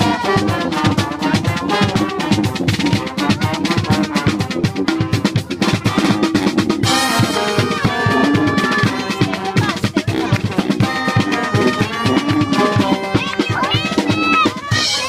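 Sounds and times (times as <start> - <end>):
brass band playing: 0.0 - 15.0
drum beat: 0.0 - 15.0
horns playing: 0.0 - 15.0.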